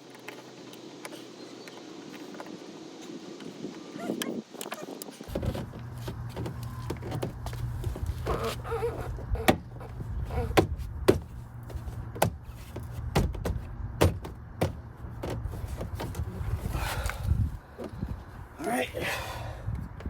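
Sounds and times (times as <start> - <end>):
car door parts clicking and knocking: 5.3 - 16.4.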